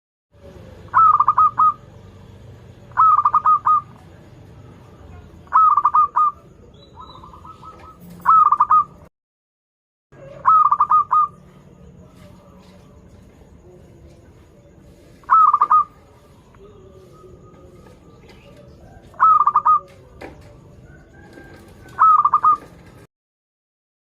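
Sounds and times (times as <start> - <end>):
dove cooing: 0.4 - 2.2, 2.8 - 9.1, 10.2 - 12.6, 15.2 - 23.1.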